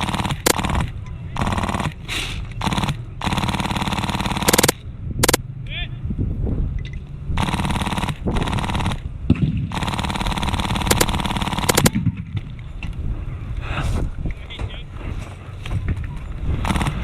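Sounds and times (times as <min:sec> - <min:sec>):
airsoft machine gun bursts: 0:00.0 - 0:05.4, 0:07.4 - 0:09.0, 0:09.7 - 0:12.0, 0:16.6 - 0:17.0.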